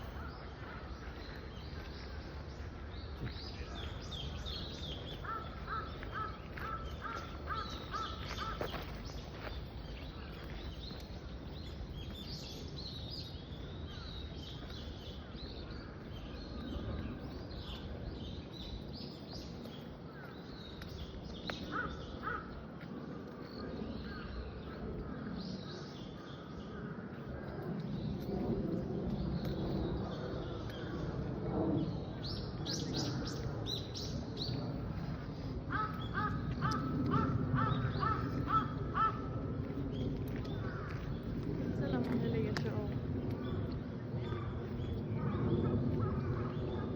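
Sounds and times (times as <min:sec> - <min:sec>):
crows cawing: 0:05.2 - 0:08.9, 0:21.7 - 0:22.5, 0:35.7 - 0:39.3.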